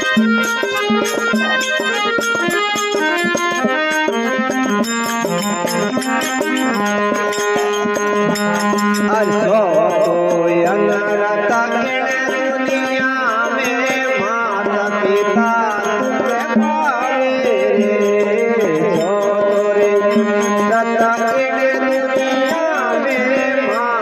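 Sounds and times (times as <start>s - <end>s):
wavering melody line: 0.0s - 11.4s
held melody notes: 0.0s - 24.0s.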